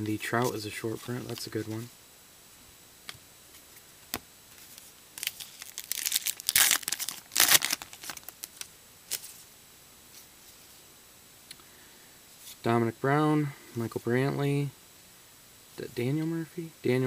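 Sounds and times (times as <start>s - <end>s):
foil wrapper tearing and crinkling: 5.2s - 9.3s.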